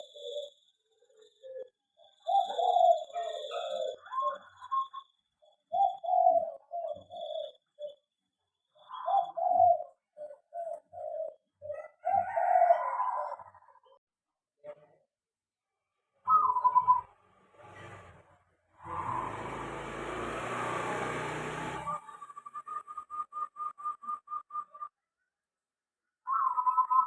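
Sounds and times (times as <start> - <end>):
zebra doves cooing: 0.0 - 8.1, 8.7 - 14.0, 18.8 - 24.9, 26.3 - 27.0.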